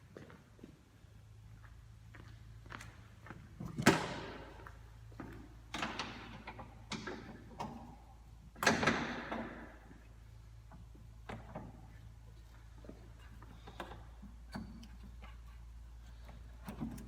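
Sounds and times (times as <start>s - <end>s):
clunks and rattles of tools: 3.6s - 17.0s.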